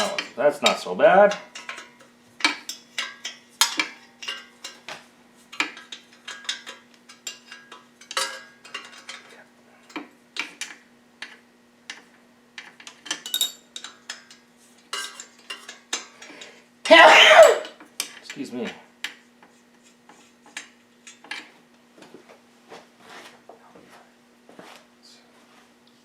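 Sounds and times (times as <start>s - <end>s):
metal tools clinking: 0.0s - 4.8s, 5.7s - 9.3s, 13.1s - 14.3s, 14.9s - 16.3s.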